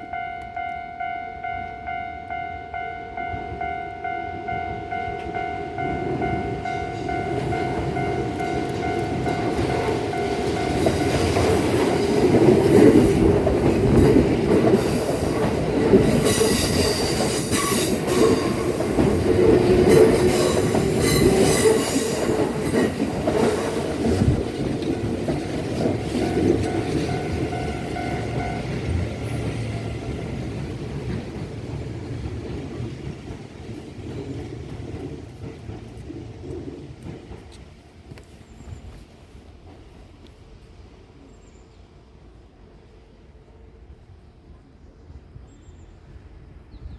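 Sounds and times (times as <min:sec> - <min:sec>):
level crossing bell ringing: 0:00.0 - 0:11.6, 0:25.0 - 0:29.1
train wheels rumbling over rails: 0:04.6 - 0:42.6.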